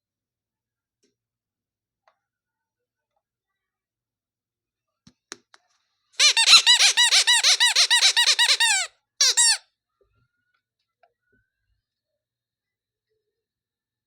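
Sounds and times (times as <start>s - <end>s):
high squeaks rising and falling: 6.2s - 9.6s.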